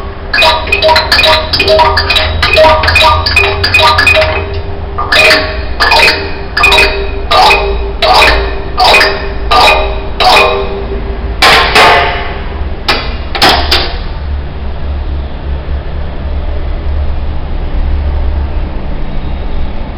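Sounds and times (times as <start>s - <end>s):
pitched percussion notes ringing: 0.4s - 12.1s.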